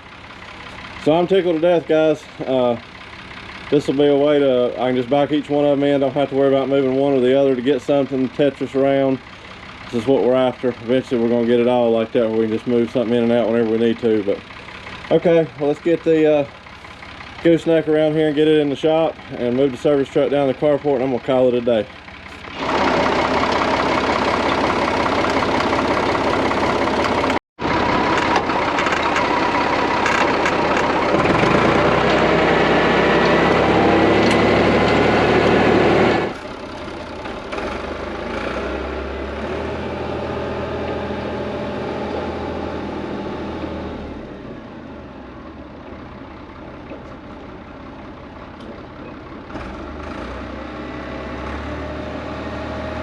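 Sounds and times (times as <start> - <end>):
truck engine pulling away: 0.0 - 53.0.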